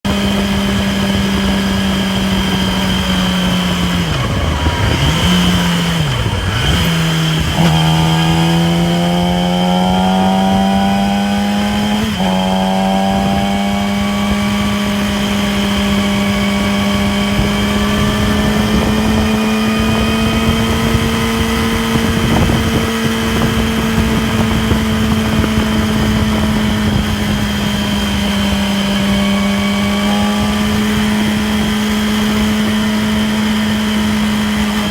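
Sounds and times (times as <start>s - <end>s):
motorcycle engine cruising: 0.0s - 34.9s
high whine: 0.4s - 21.0s.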